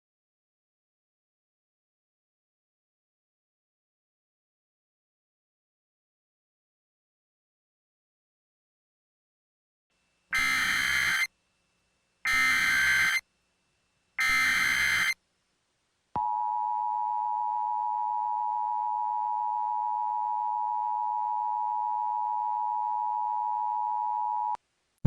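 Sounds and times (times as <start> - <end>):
screeching data bursts: 10.3 - 11.3, 12.3 - 13.2, 14.2 - 15.2
two-tone alert tone: 10.4 - 11.3.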